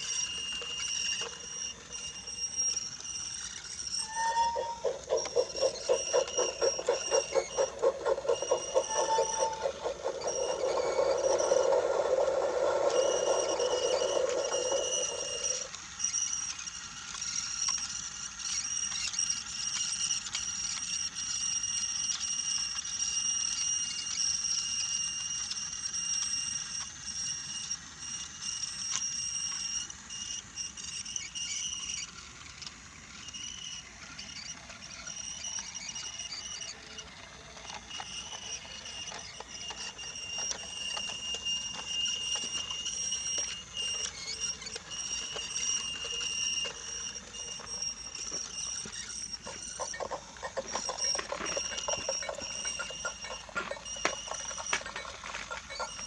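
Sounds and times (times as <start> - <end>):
wheels clicking on track joints: 0.0 - 16.4, 34.3 - 56.0
toy train motor whine: 0.0 - 56.0.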